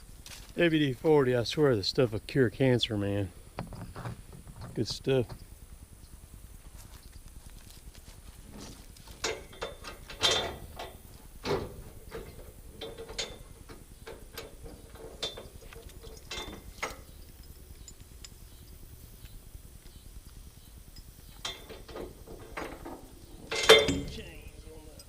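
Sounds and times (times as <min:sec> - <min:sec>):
chain links rattling: 0:08.5 - 0:25.0
load binder ratchet clanks and clicks: 0:09.1 - 0:20.0, 0:20.9 - 0:25.0.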